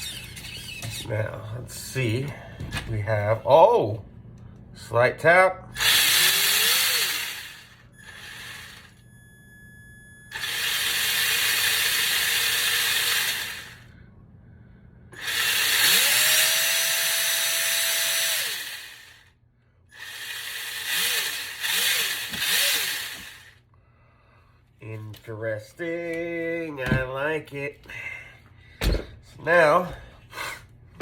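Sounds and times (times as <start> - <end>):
electric motor whining: 5.8 - 9.1, 10.2 - 13.9, 15.2 - 19.3, 19.9 - 23.6.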